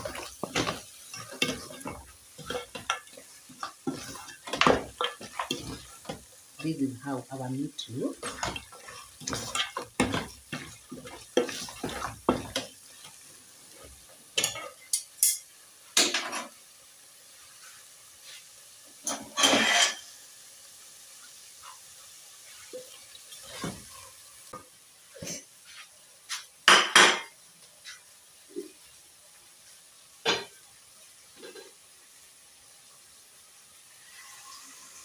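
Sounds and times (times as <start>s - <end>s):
spoon and pot clinking: 0.0s - 6.2s, 8.2s - 12.7s, 14.4s - 16.5s, 19.1s - 20.1s
cookware rattling: 8.1s - 12.7s.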